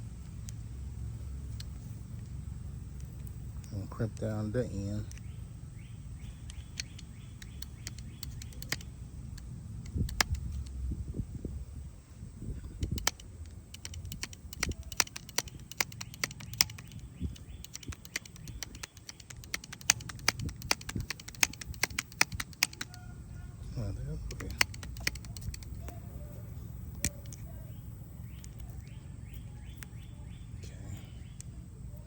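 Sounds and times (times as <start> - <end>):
metal clicks and taps: 5.0 - 5.3, 6.4 - 10.8, 12.7 - 23.0, 24.2 - 26.1, 26.9 - 27.5, 28.3 - 29.9
low rumble: 8.9 - 13.7.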